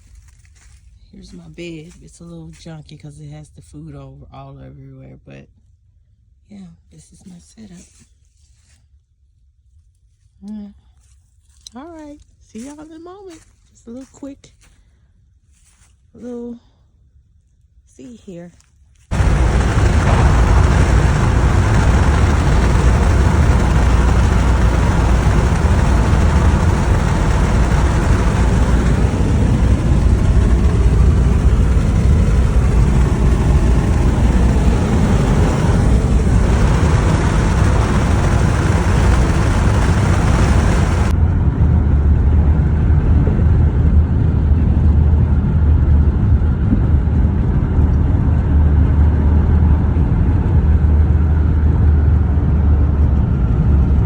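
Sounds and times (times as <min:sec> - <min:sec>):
vehicle road rumble: 0:19.1 - 0:54.0.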